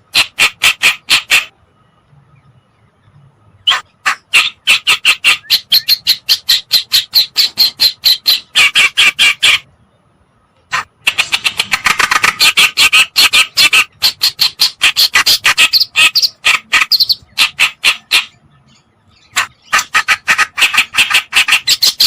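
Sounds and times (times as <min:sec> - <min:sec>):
bird harsh chattering song: 0:03.6 - 0:09.7, 0:10.8 - 0:22.0.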